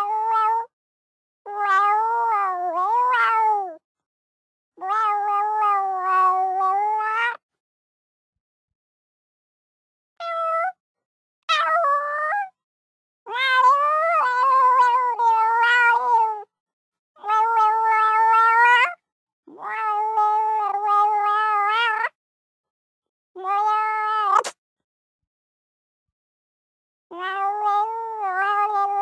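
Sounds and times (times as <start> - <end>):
cat yowling: 1.5 - 3.7, 4.8 - 7.4, 10.2 - 10.8, 11.5 - 12.6, 13.3 - 16.5, 17.2 - 22.2, 23.4 - 24.6, 27.1 - 29.0.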